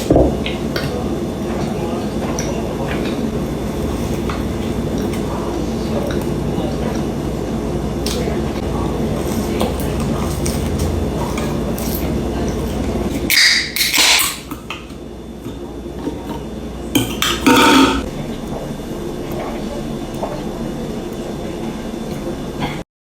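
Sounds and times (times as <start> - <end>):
low background hum: 0.0 - 22.8
eating noises: 8.0 - 18.1
dishes and utensils clinking: 15.5 - 18.1.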